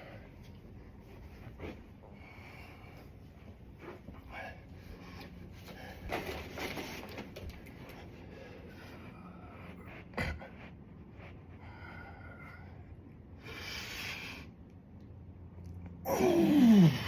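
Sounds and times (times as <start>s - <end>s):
person breathing hard: 8.0s - 14.6s.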